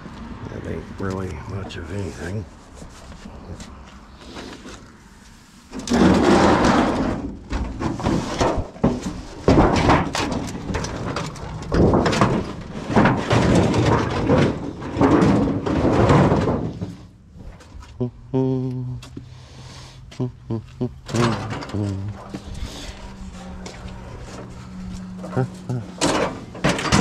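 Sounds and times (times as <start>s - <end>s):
scrap metal scraping and knocking: 5.7s - 17.6s, 21.1s - 27.0s.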